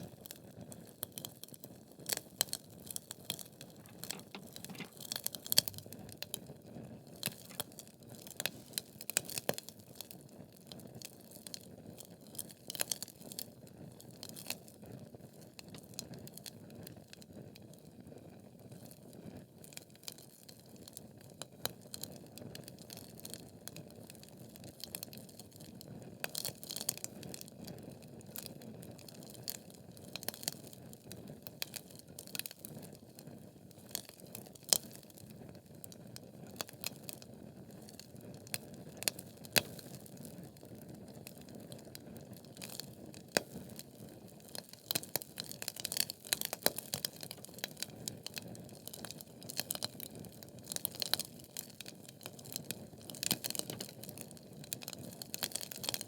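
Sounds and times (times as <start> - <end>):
logs crackling and popping: 3.8 - 6.1.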